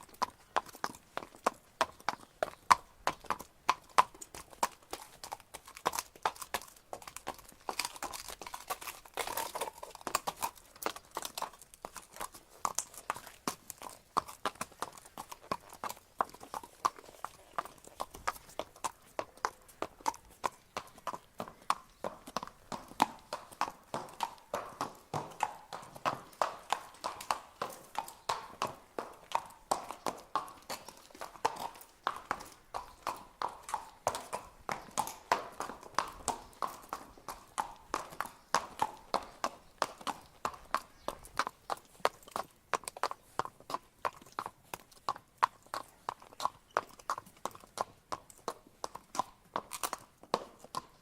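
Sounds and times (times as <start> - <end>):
horse hooves clip-clopping: 0.0 - 51.0.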